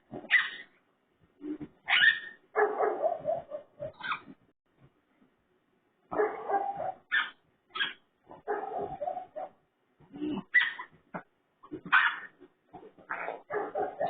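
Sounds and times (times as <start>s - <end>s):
raccoon grunting and squealing: 7.2s - 14.0s.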